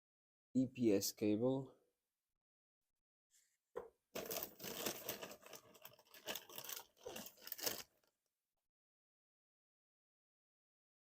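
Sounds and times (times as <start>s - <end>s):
plastic packaging crinkling: 4.2s - 8.1s.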